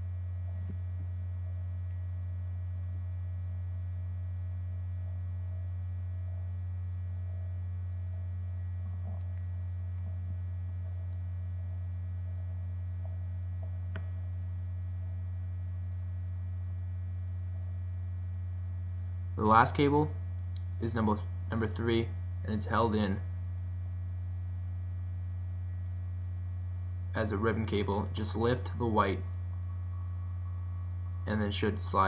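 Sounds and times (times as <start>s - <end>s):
low electrical hum: 0.0s - 32.0s.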